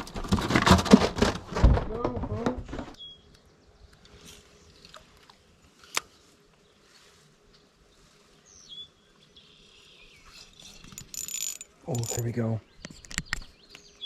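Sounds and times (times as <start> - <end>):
person talking: 11.8 - 12.6.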